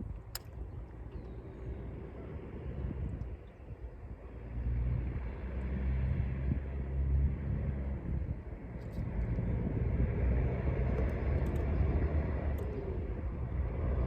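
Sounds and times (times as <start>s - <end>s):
low motor drone: 0.0s - 14.0s
sharp click: 0.2s - 0.6s.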